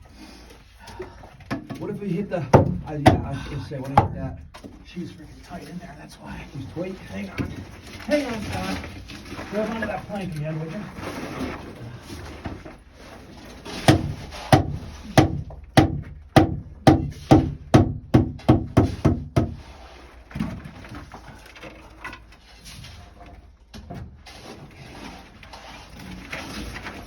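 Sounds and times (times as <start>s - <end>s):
sledgehammer blows on timber: 13.8s - 19.6s.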